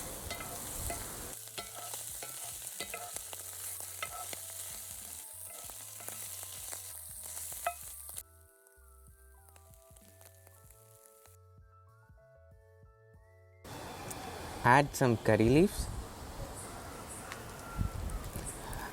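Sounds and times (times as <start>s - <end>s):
utensil clicking and scraping pan: 0.0s - 8.2s
oysters sizzling in oil: 0.0s - 11.3s
faint music: 0.0s - 18.9s.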